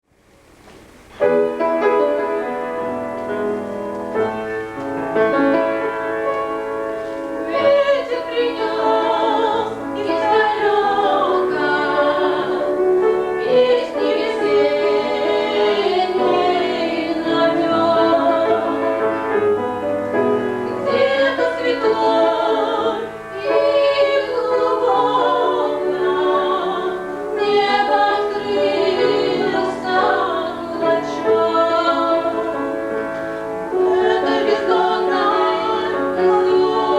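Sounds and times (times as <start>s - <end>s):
instrumental accompaniment: 0.5s - 36.9s
two women singing a duet: 7.4s - 12.8s, 13.4s - 19.2s, 20.7s - 33.0s, 33.7s - 36.9s.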